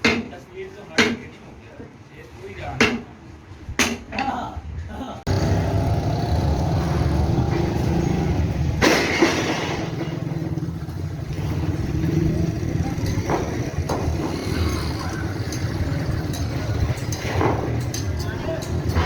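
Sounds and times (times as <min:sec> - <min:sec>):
sharp knocks: 0:13.2 - 0:14.7.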